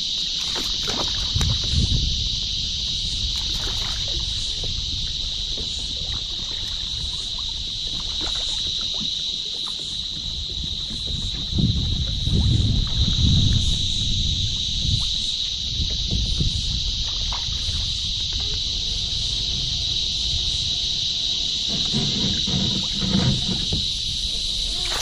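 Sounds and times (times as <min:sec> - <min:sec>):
high-pitched insect buzzing: 0:12.2 - 0:25.0.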